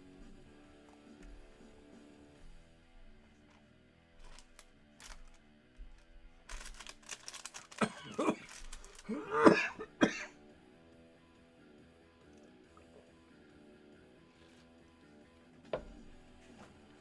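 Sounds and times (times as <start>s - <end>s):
background music: 0.0s - 17.0s
person coughing: 7.6s - 10.4s.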